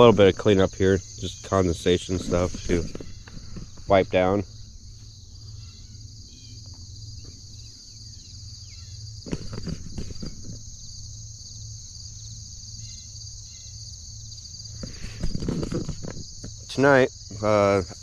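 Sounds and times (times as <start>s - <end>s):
insects chorus: 0.0s - 18.0s
knocks and rustles: 2.1s - 4.0s, 9.2s - 10.7s, 14.8s - 16.7s.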